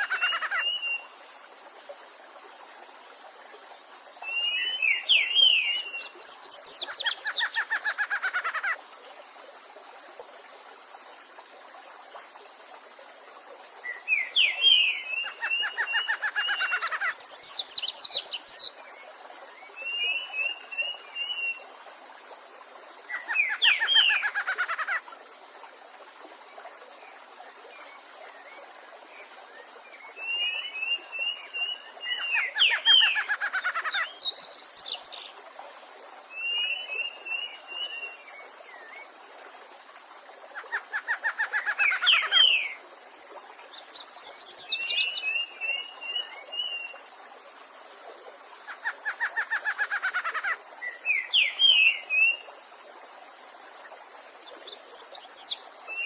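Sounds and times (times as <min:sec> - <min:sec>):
songbirds singing: 0:00.0 - 0:01.1, 0:04.2 - 0:08.8, 0:13.8 - 0:18.8, 0:23.1 - 0:25.0, 0:29.5 - 0:35.4, 0:48.6 - 0:52.5
running water hiss: 0:00.0 - 0:56.0.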